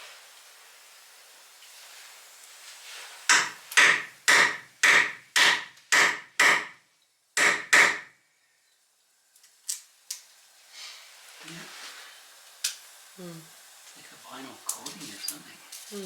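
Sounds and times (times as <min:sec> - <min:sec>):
hammer striking wood: 0:03.3 - 0:06.8, 0:07.4 - 0:08.1.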